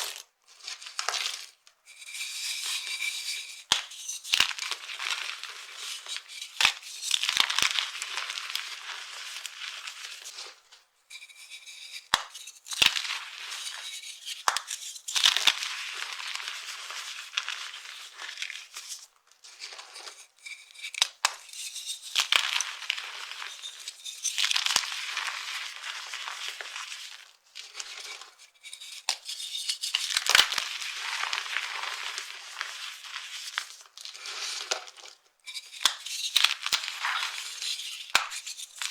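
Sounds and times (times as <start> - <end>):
dry soap crunching: 24.4 - 26.9, 30.0 - 34.7.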